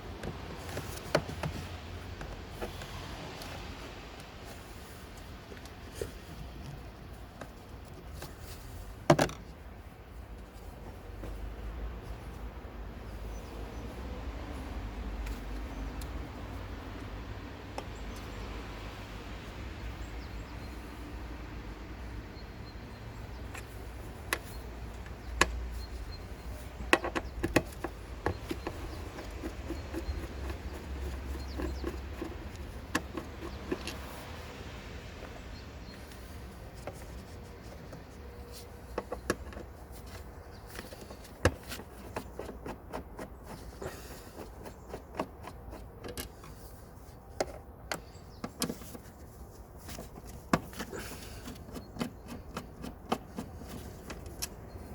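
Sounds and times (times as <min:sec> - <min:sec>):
engine chirps and clicks: 0:22.4 - 0:46.6.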